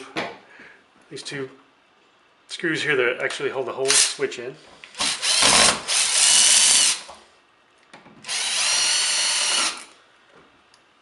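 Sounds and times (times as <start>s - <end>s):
cordless drill motor running: 5.0s - 7.1s, 8.2s - 10.0s.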